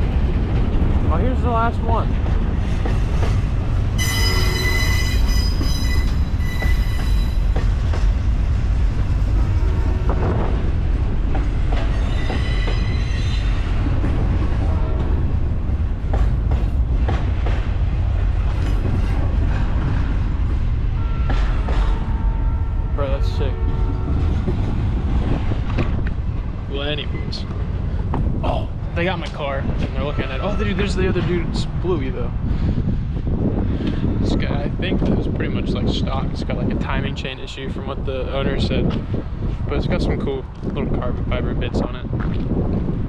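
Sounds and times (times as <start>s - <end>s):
clacks over rail joints: 0.0s - 3.9s, 5.3s - 9.4s, 10.0s - 20.2s, 21.2s - 22.1s, 23.6s - 28.4s
train wheels rumbling on rails: 0.0s - 43.0s
metallic wheel squeal: 4.0s - 7.5s, 11.9s - 13.6s.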